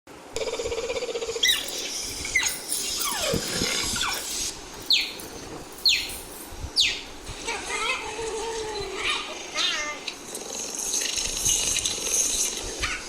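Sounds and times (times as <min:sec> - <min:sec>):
cheetah chirping: 0:01.2 - 0:07.1.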